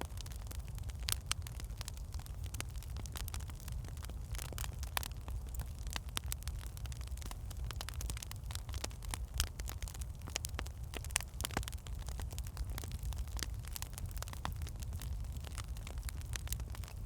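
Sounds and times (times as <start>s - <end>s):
low rumble of flames: 0.0s - 17.0s
wood fire crackling: 0.0s - 17.0s.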